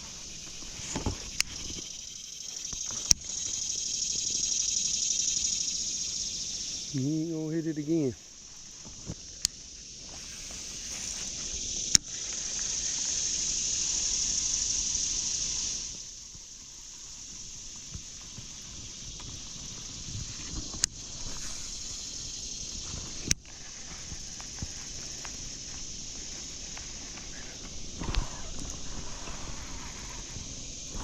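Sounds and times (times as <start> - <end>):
high-pitched insect drone: 0.0 - 31.0.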